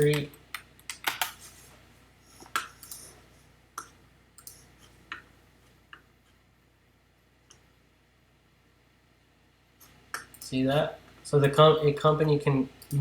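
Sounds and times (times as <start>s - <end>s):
computer keyboard clicks: 0.0s - 1.4s, 2.6s - 3.1s.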